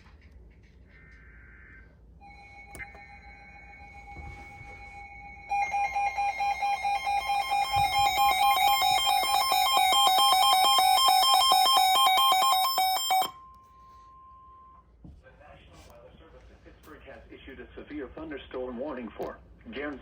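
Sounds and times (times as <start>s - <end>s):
weather radio alarm beeping: 2.2s - 14.7s
faint steady tone: 2.2s - 14.9s.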